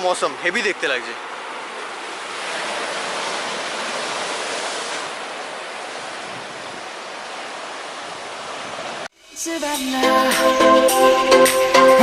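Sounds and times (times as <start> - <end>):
sea surf breaking on rocks: 0.5 - 9.1.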